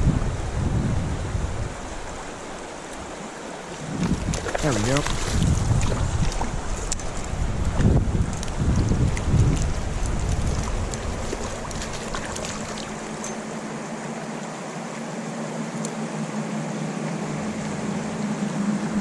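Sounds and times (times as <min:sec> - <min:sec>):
wind buffeting microphone: 0:00.0 - 0:03.2, 0:03.8 - 0:13.3
creek water rushing: 0:00.0 - 0:19.0.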